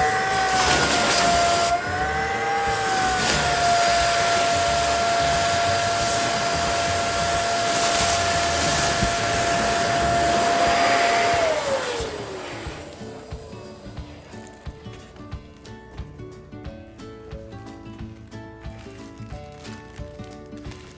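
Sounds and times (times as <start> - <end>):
electric balloon pump whining: 0.0 - 16.4
rush of air: 2.6 - 14.4.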